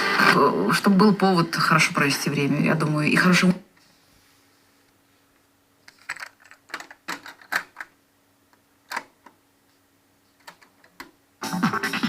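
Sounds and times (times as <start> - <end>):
music from boombox: 11.4 - 12.0.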